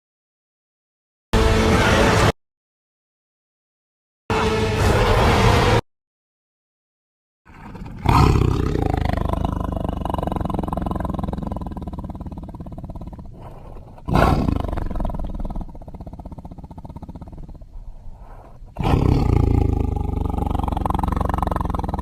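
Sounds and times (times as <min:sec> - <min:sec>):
creature roaring: 0:07.5 - 0:17.8, 0:18.7 - 0:22.0.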